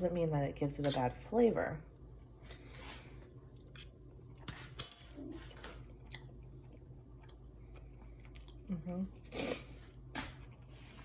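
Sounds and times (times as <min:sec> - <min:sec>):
person chewing crunchy taco: 0:05.5 - 0:11.0.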